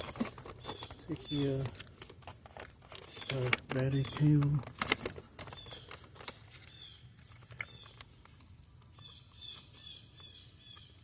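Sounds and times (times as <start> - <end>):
small birds chirping: 0.0 - 2.0, 3.0 - 4.6, 5.4 - 8.3, 8.9 - 11.0
tools being handled: 0.0 - 9.0.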